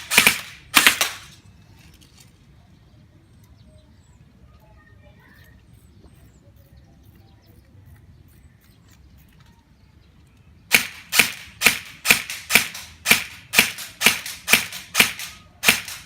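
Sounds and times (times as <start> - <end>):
airsoft rifle shots: 0.0 - 1.4, 10.7 - 16.0.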